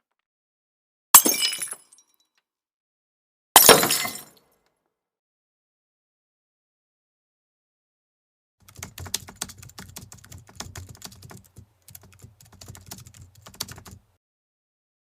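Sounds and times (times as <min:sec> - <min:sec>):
broken glass shards clinking: 0:03.6 - 0:04.4.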